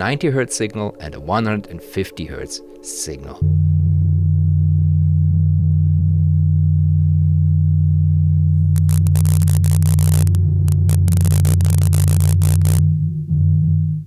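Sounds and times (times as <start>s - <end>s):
harsh crackling noise: 8.7s - 12.8s.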